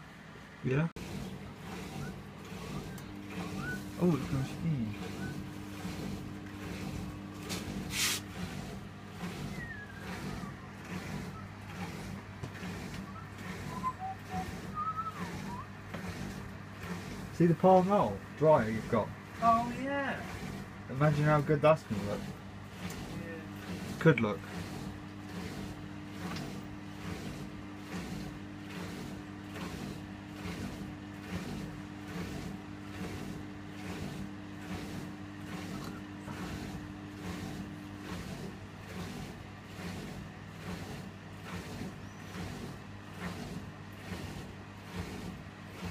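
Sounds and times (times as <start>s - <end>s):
washing machine motor hum: 0.0s - 45.9s
drum turning with rhythmic swish: 0.7s - 45.9s
faint whistling glides: 1.9s - 4.4s, 9.4s - 12.1s, 12.8s - 15.8s.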